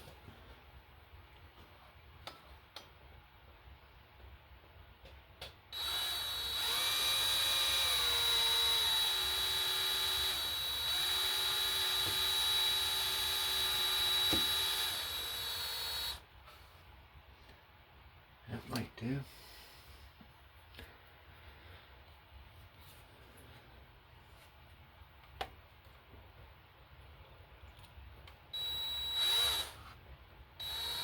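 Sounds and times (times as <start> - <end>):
electric drill whining: 5.8 - 16.2, 28.6 - 30.0, 30.6 - 31.0.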